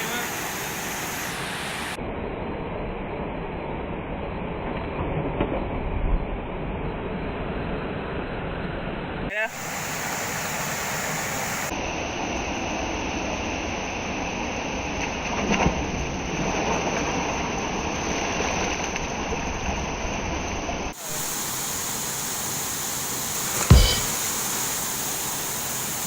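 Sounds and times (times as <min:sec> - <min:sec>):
waterfall rushing: 0:00.0 - 0:02.0, 0:09.5 - 0:11.7
thump: 0:23.6 - 0:24.2.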